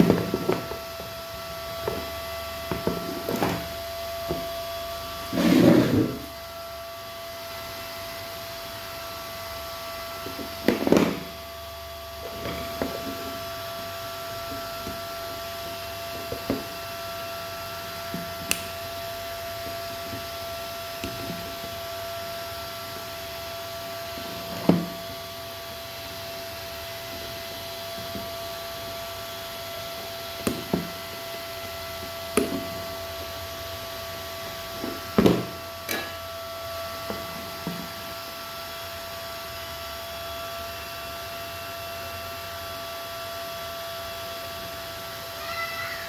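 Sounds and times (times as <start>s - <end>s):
electrical hum: 0.0s - 39.6s
tools knocking and clicking: 35.2s - 36.2s.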